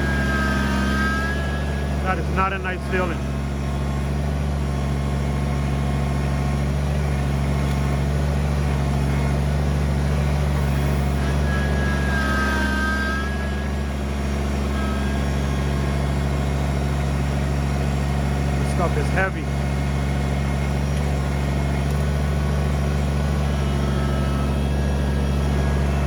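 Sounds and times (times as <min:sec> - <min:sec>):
brief high whine: 0:00.0 - 0:03.3, 0:10.5 - 0:16.6, 0:23.4 - 0:26.0
diesel tractor engine running: 0:00.0 - 0:26.0.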